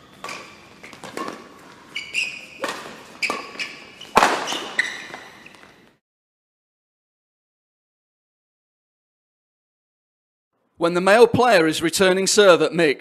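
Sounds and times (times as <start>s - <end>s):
rackets hitting shuttlecock: 0.0s - 5.8s
shoes squeaking on floor: 0.0s - 6.0s.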